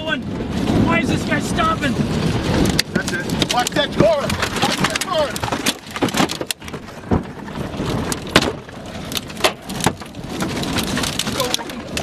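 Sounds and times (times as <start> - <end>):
car rumbling: 0.0 - 12.0
debris tapping on car body: 2.6 - 12.0.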